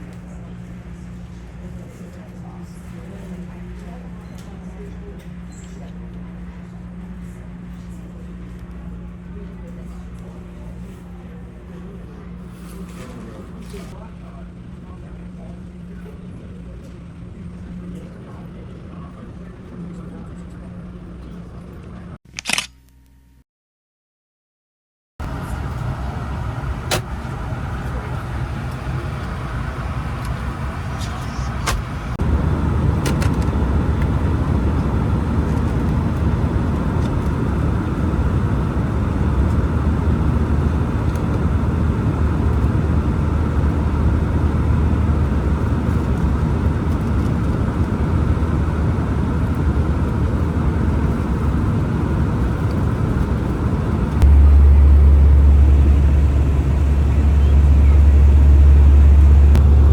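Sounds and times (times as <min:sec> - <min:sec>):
car road and engine rumble: 0:25.2 - 0:59.9.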